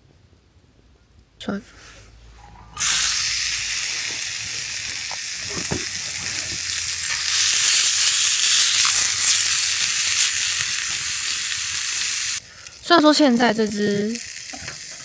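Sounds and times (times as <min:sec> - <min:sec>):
chicken sizzling in a hot pan: 0:02.8 - 0:15.0.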